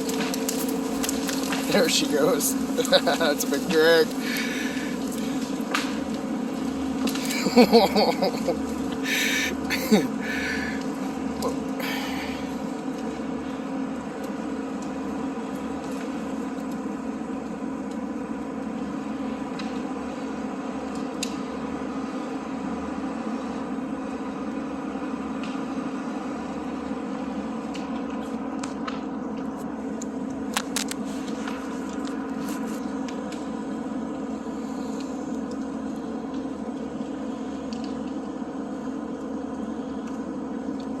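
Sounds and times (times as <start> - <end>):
diesel engine running under load: 0.0 - 39.1.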